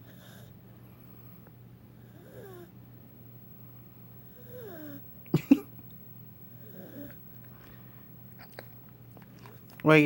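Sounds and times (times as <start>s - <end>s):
pet snoring: 0.0s - 0.5s, 2.0s - 2.7s, 4.3s - 5.0s, 6.6s - 7.2s.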